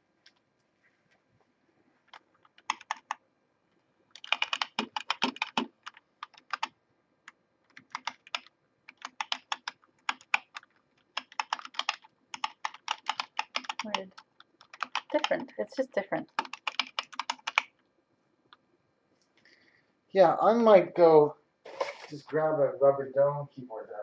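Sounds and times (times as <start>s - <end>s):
typing on a keyboard: 2.1s - 3.2s, 4.1s - 15.6s, 16.2s - 17.8s.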